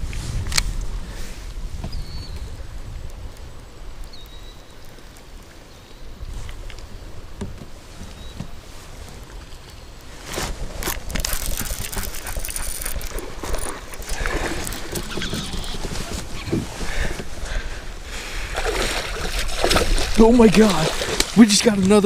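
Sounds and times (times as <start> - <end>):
water noise: 0.0 - 22.0
knocks and clatter on kayak: 7.3 - 8.6, 10.7 - 17.3.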